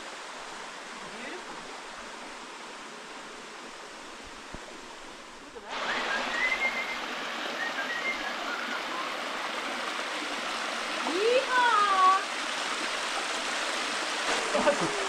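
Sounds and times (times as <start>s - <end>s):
waterfall pouring into pool: 5.7s - 15.0s
high whistled notes: 5.8s - 9.2s.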